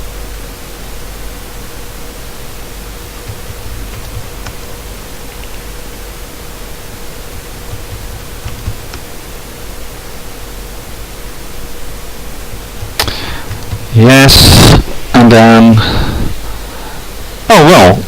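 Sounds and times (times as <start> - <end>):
faint hum: 0.0 - 18.0
steady hiss: 0.0 - 18.0
sharp click: 12.8 - 13.8.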